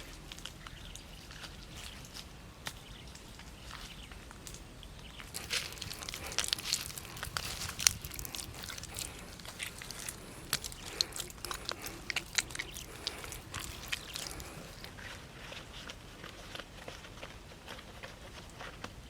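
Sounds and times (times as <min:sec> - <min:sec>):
person chewing crunchy food: 0:00.0 - 0:19.0.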